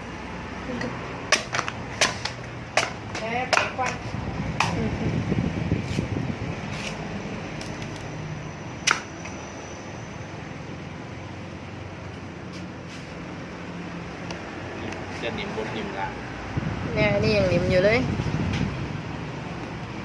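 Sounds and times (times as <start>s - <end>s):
knocks on a coconut: 1.3s - 4.0s, 4.6s - 4.8s.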